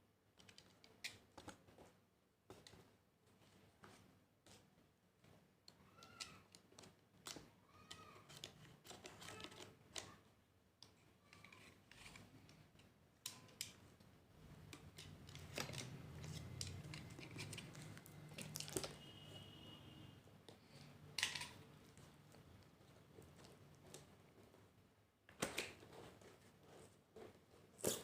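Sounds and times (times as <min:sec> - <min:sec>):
packaging clicks and squeaky rubbing: 0:05.9 - 0:10.3, 0:14.7 - 0:19.8.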